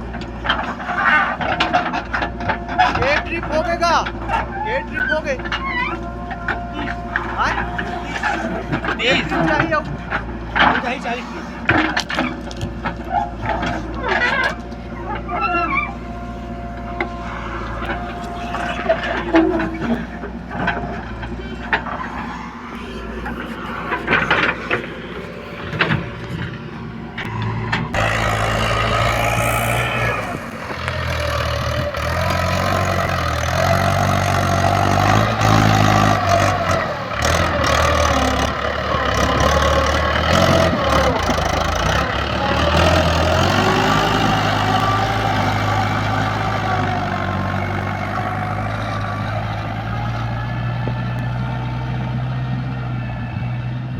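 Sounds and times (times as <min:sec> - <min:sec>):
diesel engines running: 0:00.0 - 0:53.9.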